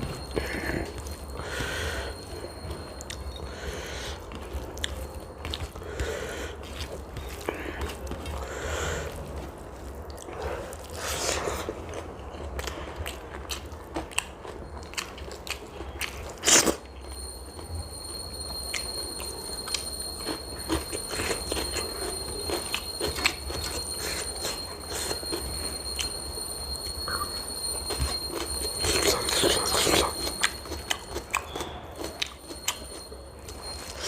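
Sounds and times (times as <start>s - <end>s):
faint high whine: 0.0s - 11.8s, 14.5s - 34.0s
chewing and mouth clicks: 2.4s - 17.1s, 27.0s - 34.0s.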